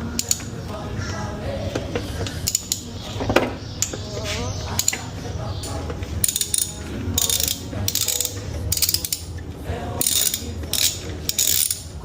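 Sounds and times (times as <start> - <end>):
ratcheting wrench clicking: 0.2 - 0.5, 2.2 - 3.0, 4.8 - 5.1, 6.2 - 9.4, 10.0 - 12.0.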